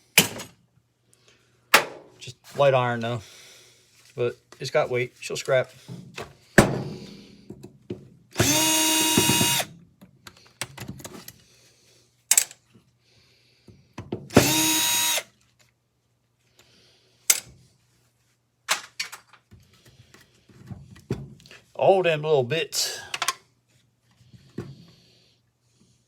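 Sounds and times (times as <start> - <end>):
power drill running: 8.4 - 9.7, 14.3 - 15.3.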